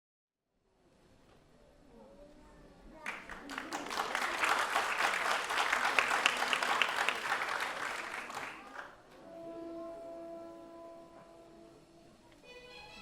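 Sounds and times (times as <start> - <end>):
audience applauding: 3.0 - 9.0.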